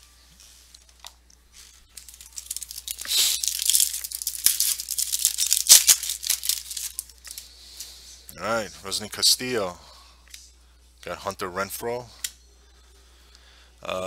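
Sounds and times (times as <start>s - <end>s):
foil wrapper ripping and rustling: 1.9s - 7.4s.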